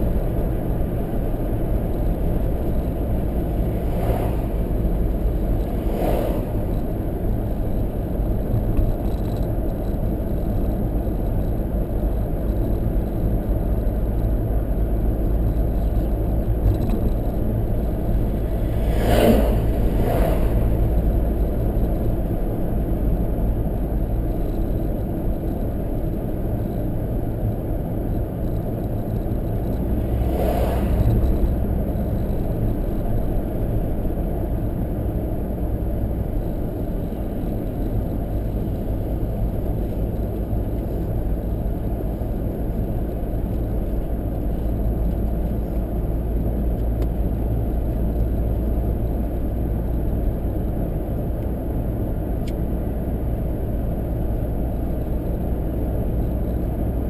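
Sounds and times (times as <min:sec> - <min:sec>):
engine and tyre rumble: 0:00.0 - 0:57.0
passing swoosh: 0:18.2 - 0:21.2.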